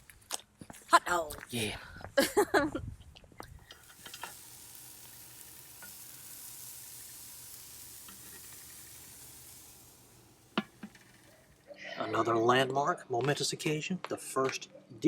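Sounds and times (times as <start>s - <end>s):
hot dogs sizzling: 0.0s - 2.4s, 3.2s - 11.8s.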